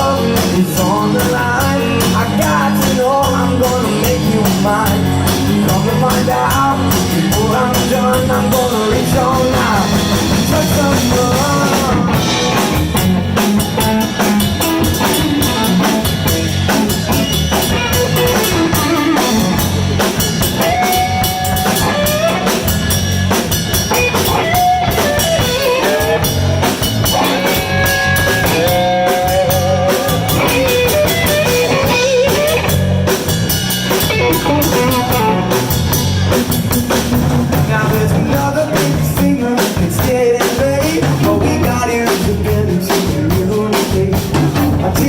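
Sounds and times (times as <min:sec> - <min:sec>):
live blues band: 0:00.0 - 0:45.0
lead guitar sliding notes: 0:27.1 - 0:33.0.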